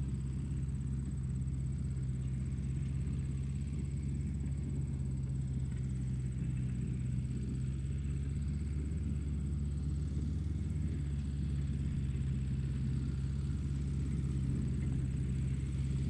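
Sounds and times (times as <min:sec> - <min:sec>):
tractor engine running: 0:00.0 - 0:16.0.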